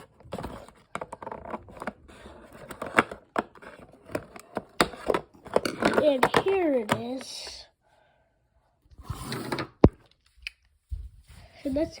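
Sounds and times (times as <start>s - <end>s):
plastic and cardboard rustling: 0.0s - 7.2s.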